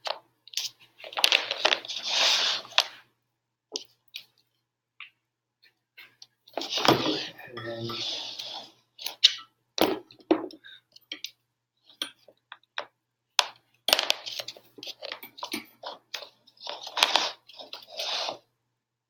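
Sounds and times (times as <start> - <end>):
rustling: 0.0 - 3.1
objects clicking and tapping: 9.0 - 17.9.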